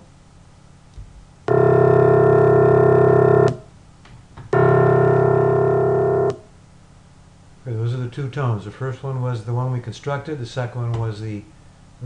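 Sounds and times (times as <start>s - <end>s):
synthesized low piano tone: 1.5s - 3.6s, 4.5s - 6.4s.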